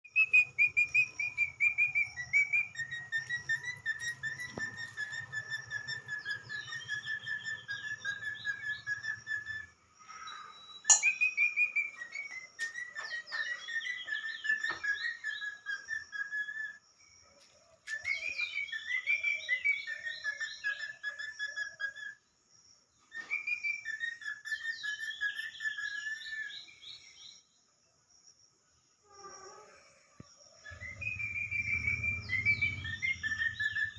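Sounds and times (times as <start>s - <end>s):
parakeet whistling a tune: 0.0s - 9.8s, 10.7s - 16.8s, 17.9s - 22.2s, 23.1s - 27.2s, 30.7s - 33.9s.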